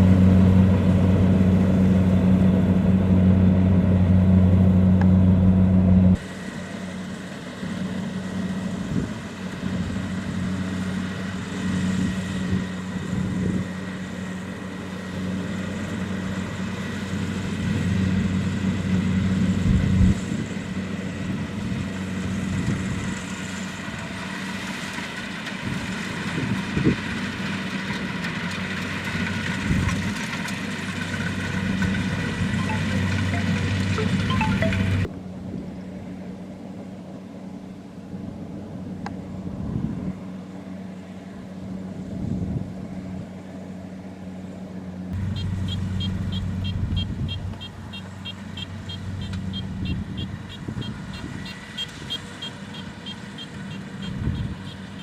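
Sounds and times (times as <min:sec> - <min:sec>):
combine harvester engine humming: 0:00.0 - 0:55.0.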